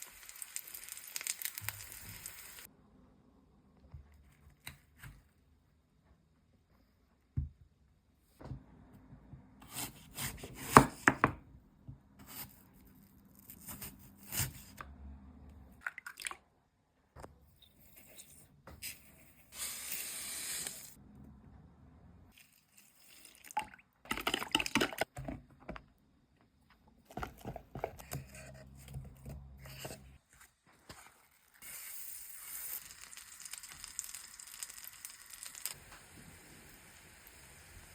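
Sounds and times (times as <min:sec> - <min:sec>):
food handling: 0:27.0 - 0:31.4.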